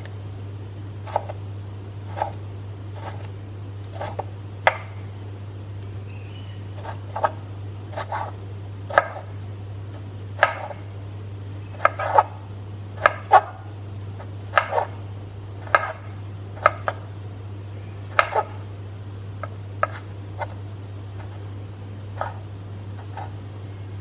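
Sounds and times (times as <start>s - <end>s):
steady low hum: 0.0s - 24.0s
knife chopping on cutting board: 1.0s - 1.4s, 2.1s - 3.3s, 3.9s - 5.0s, 6.8s - 9.3s, 9.9s - 10.9s, 11.7s - 12.4s, 13.0s - 13.6s, 14.2s - 15.0s, 15.6s - 17.1s, 18.1s - 18.6s, 19.4s - 20.6s, 21.2s - 21.6s, 22.2s - 22.4s, 23.0s - 23.4s.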